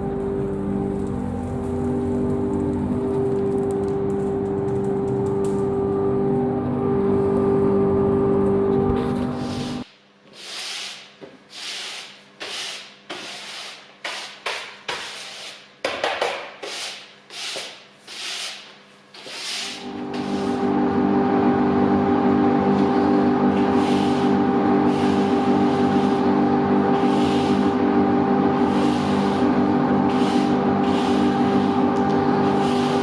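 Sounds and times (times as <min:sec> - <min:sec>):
dust extractor motor humming: 0:00.0 - 0:09.8, 0:19.8 - 0:33.0.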